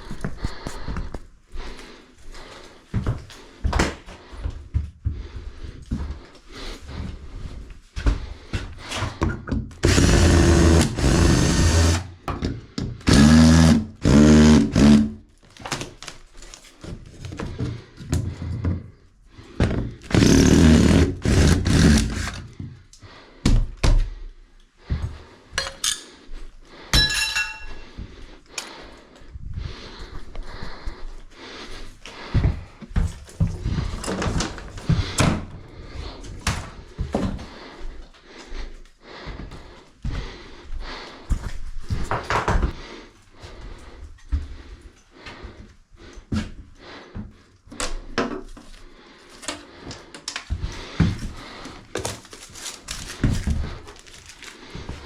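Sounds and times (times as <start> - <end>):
power drill running in bursts: 9.8 - 12.1, 13.1 - 15.1, 20.1 - 22.4.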